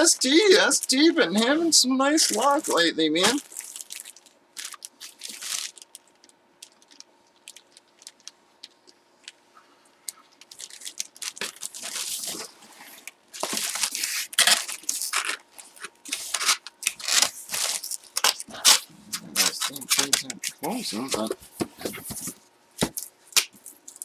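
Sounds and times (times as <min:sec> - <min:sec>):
packaging rustling and crinkling: 0:02.2 - 0:09.4, 0:10.1 - 0:20.5.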